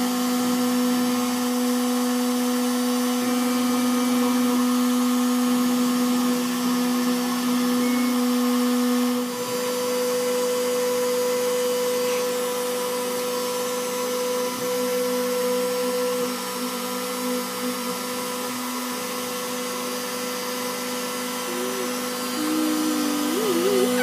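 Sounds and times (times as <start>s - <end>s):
spindle motor high whine: 0.0s - 24.0s.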